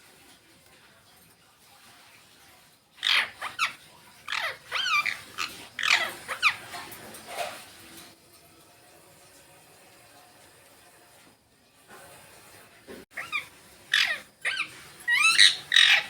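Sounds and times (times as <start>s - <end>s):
parakeet shrill calls: 3.0s - 6.8s, 13.2s - 16.0s.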